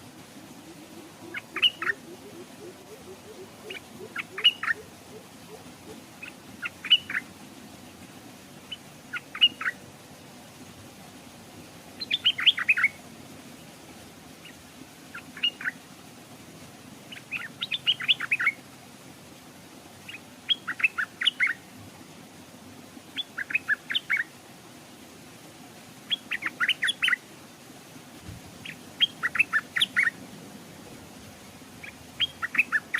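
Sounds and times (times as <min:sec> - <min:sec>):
bird singing: 0:01.0 - 0:04.8.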